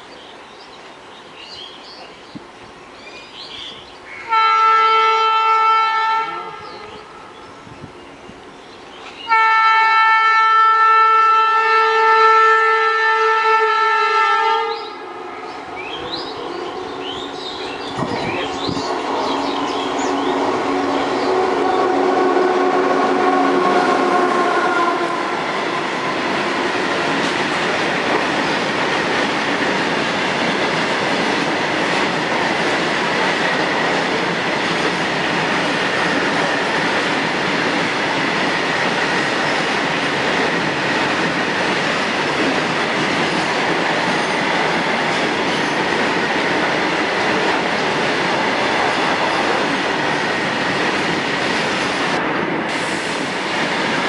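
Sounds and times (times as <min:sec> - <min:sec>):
locomotive horn: 0:04.3 - 0:06.6, 0:09.3 - 0:14.9, 0:20.7 - 0:26.0
train wheels clattering on rail: 0:25.4 - 0:54.0.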